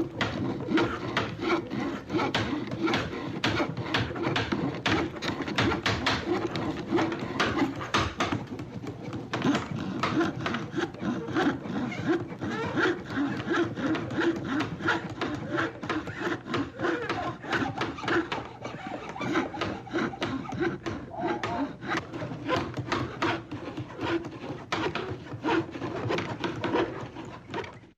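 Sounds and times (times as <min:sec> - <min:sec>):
hand saw cutting wood: 0:00.0 - 0:27.9.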